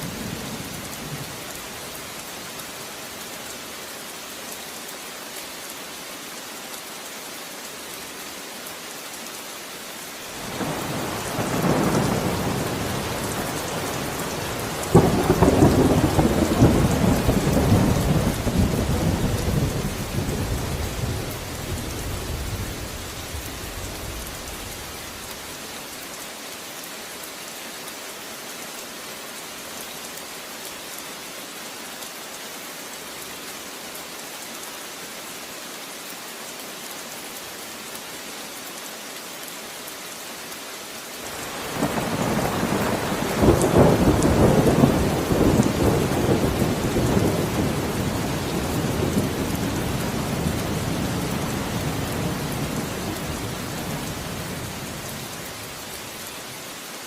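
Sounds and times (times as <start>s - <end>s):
steady rain falling: 0.0s - 57.0s
thunder rumbling and cracking: 10.4s - 22.9s, 41.6s - 54.8s.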